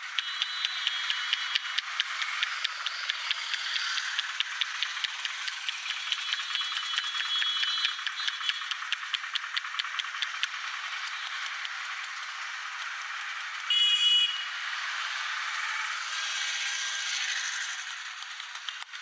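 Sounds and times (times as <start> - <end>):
roadside background noise: 0.0 - 19.0
high-pitched horn beep: 13.7 - 14.5.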